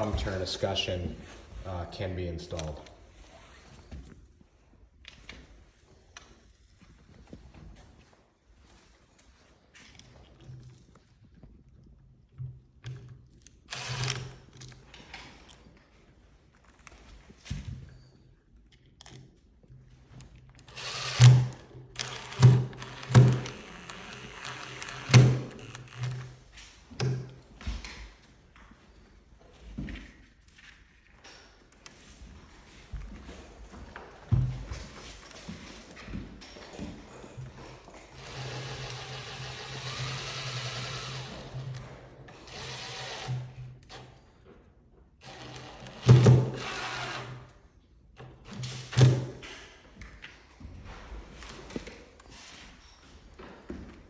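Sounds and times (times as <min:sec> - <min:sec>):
power drill running: 0:13.7 - 0:14.6, 0:20.6 - 0:26.4, 0:38.1 - 0:44.0, 0:45.2 - 0:47.4.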